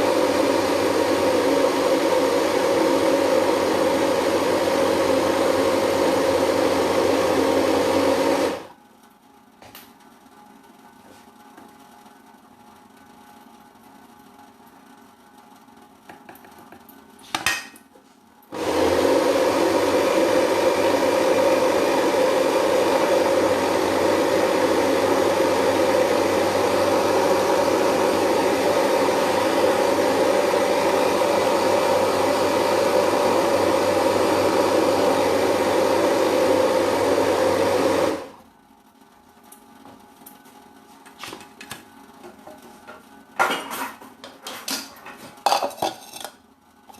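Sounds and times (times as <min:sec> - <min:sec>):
electric blender grinding: 0:00.0 - 0:08.7, 0:18.5 - 0:38.4.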